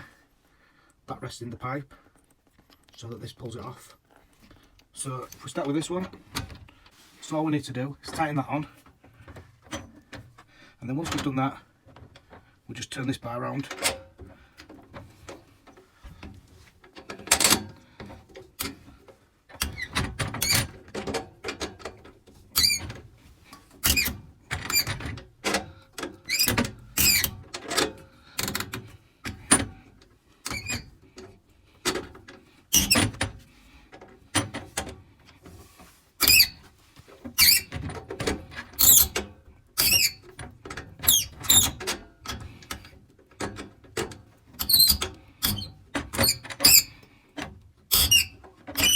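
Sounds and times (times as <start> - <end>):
threaded bar squeaking and creaking: 19.5 - 31.2, 32.7 - 33.4, 34.2 - 40.4, 41.0 - 42.8, 44.5 - 47.1, 47.9 - 48.9.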